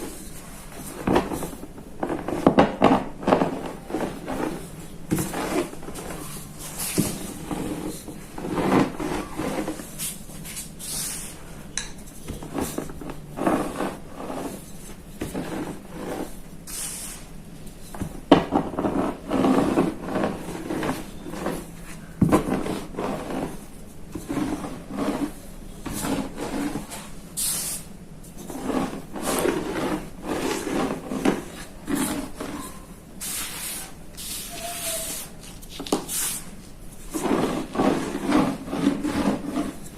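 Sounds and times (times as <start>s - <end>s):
rolling pin crushing chalk: 0.0s - 39.9s.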